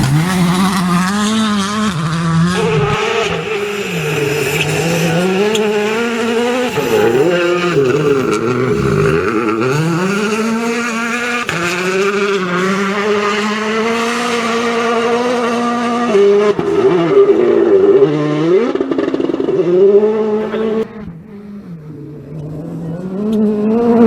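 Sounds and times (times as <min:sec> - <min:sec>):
rally car engine revving: 0:00.0 - 0:24.0.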